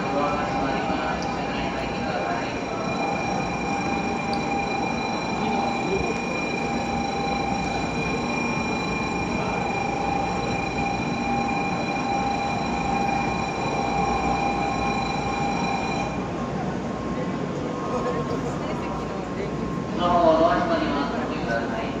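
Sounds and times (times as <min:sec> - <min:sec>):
high multi-tone whine: 0:00.0 - 0:16.4
train rumble and hiss: 0:00.0 - 0:22.0.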